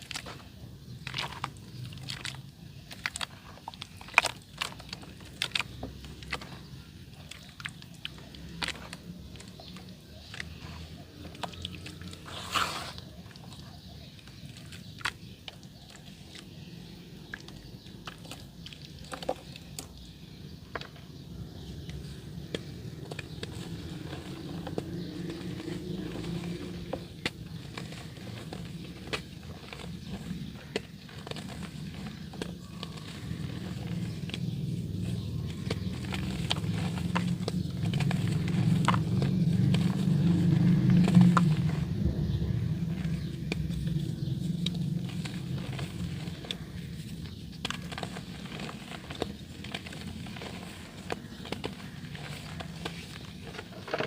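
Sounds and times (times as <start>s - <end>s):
dirt crumbling in water: 0.0s - 54.0s.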